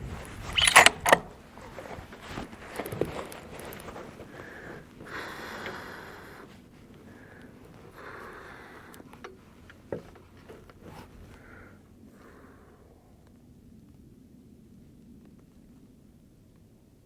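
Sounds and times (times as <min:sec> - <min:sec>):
light clicks: 0:00.2 - 0:01.4
person breathing and sniffing: 0:04.2 - 0:09.2.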